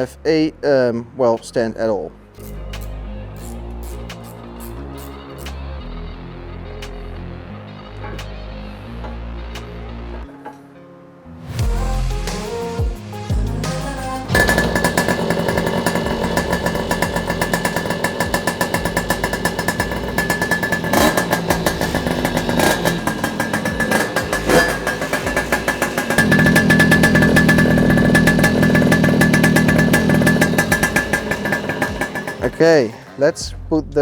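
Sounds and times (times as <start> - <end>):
moped two-stroke engine running: 14.2 - 33.4.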